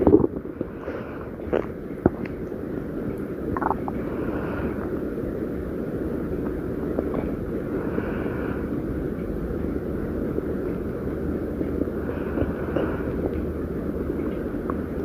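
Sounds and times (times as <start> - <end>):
stomach growling: 0.0 - 0.7, 1.4 - 5.0.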